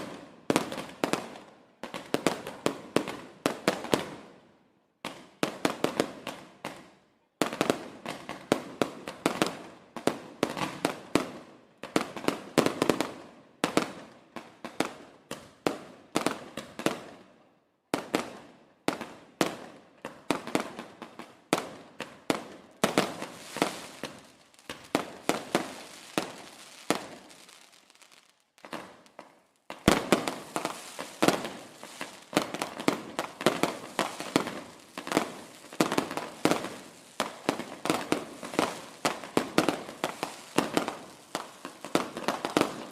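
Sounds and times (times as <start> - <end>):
fireworks bangs and crackling: 0.0 - 4.4, 5.0 - 17.3, 17.9 - 42.9.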